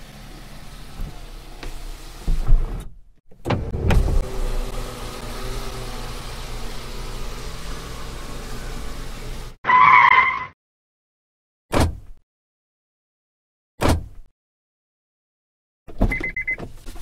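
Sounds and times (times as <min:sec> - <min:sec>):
car driving noise: 0:00.0 - 0:10.2.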